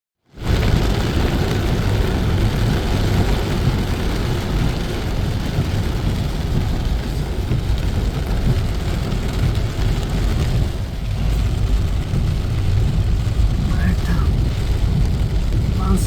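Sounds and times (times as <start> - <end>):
heavy downpour: 0.2 - 16.0
rushing floodwater: 0.4 - 16.0.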